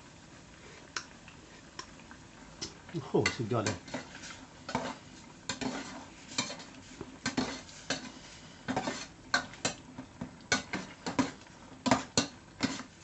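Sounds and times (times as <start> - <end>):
metal utensil scraping a bowl: 3.3 - 9.2, 11.9 - 12.9.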